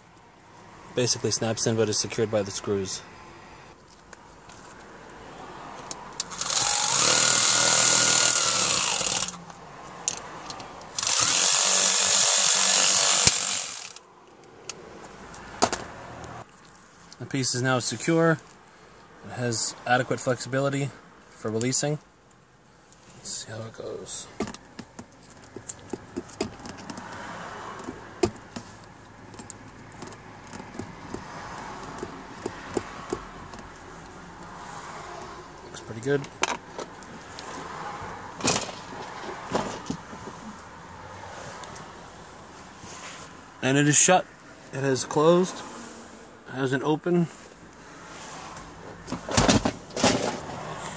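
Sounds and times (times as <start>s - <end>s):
power drill driving screws: 6.2s - 9.4s, 10.8s - 14.0s
car interior driving noise: 23.7s - 46.2s.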